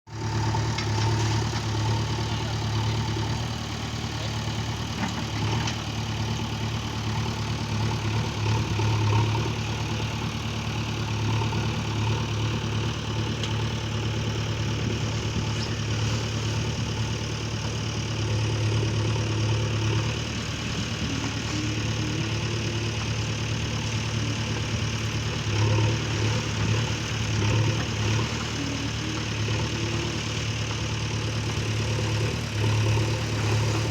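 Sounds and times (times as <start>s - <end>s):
small engine humming: 0.1s - 33.9s.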